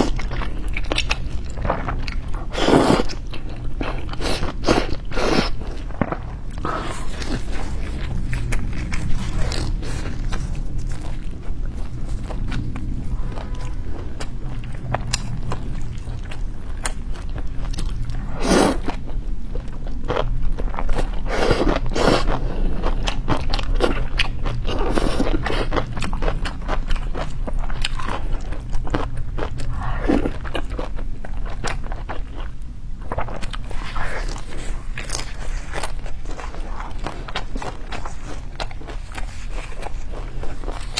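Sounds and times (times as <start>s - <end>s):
person chewing and crunching food: 0.0s - 40.9s
steady low hum: 0.0s - 40.9s.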